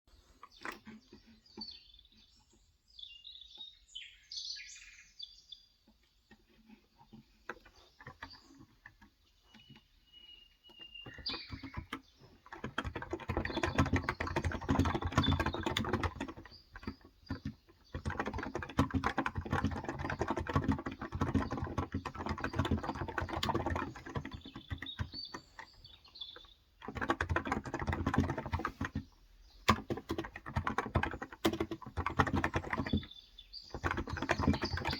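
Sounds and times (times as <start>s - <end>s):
birds chirping: 0.1s - 34.9s
fast typing on keyboard: 7.1s - 9.0s, 11.0s - 34.9s.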